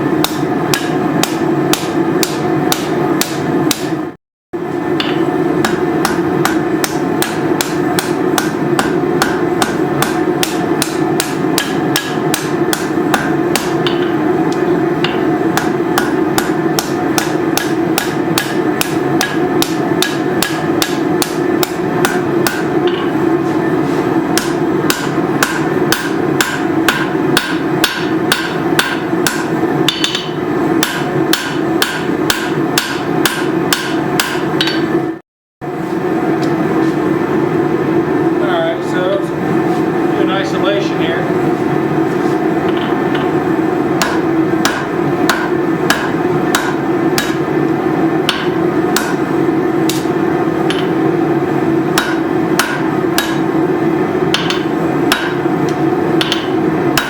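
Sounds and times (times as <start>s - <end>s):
hammer striking hot steel: 0.0s - 4.1s, 5.0s - 23.2s, 24.2s - 35.0s, 44.0s - 51.0s, 51.8s - 57.0s
continuous hum: 0.0s - 57.0s.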